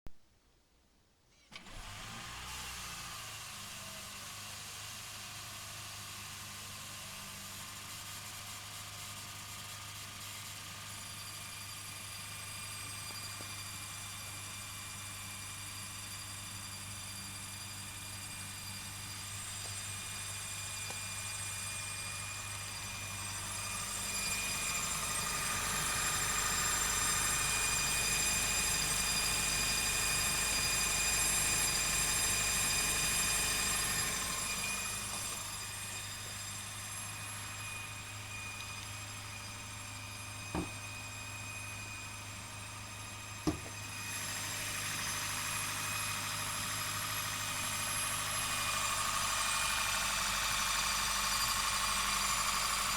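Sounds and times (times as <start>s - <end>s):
engine whine: 16.0s - 52.9s.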